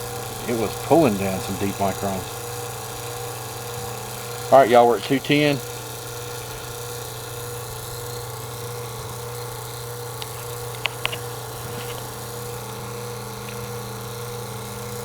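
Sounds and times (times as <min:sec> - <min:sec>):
vacuum pump running: 0:00.0 - 0:15.0
light clicks: 0:10.2 - 0:12.1.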